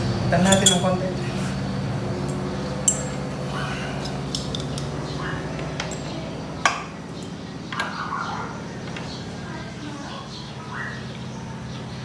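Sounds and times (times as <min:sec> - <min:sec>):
steady low hum: 0:00.0 - 0:12.0
metal tools clinking: 0:00.4 - 0:01.1, 0:02.2 - 0:03.4, 0:04.0 - 0:05.0, 0:05.8 - 0:06.3.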